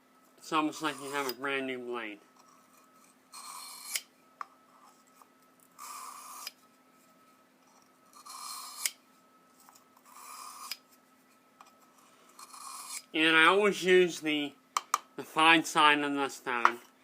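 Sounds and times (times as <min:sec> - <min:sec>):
knife blade scraping on stone: 0:00.8 - 0:01.4, 0:02.4 - 0:04.1, 0:05.8 - 0:06.6, 0:07.7 - 0:09.0, 0:09.7 - 0:10.8, 0:11.7 - 0:13.1.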